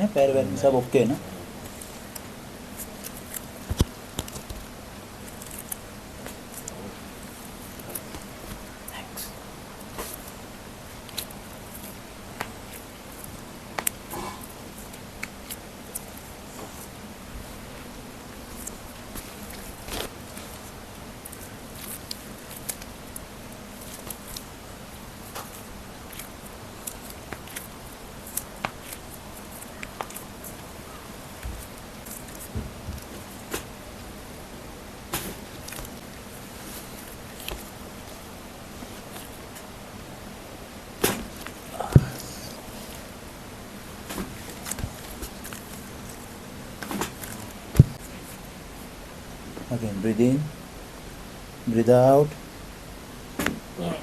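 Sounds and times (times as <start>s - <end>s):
low room hum: 0.0s - 54.0s
clothing rustling: 1.6s - 33.7s, 35.1s - 39.7s, 43.9s - 48.4s.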